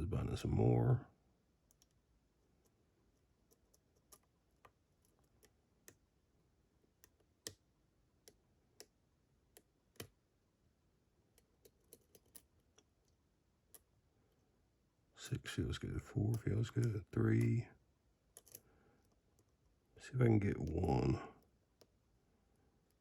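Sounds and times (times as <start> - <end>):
lock pick clicking: 18.3 - 18.6.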